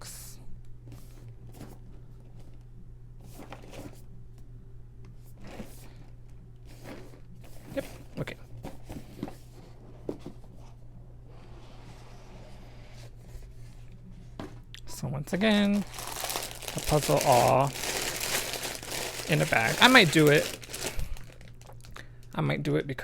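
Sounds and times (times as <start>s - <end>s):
steady low hum: 0.0s - 23.0s
cardboard packaging rustling: 15.4s - 22.0s.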